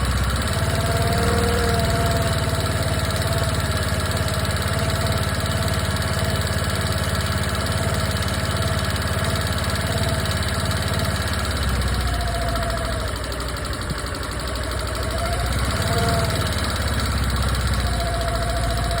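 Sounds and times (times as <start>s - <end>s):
scooter engine idling: 0.0s - 19.0s.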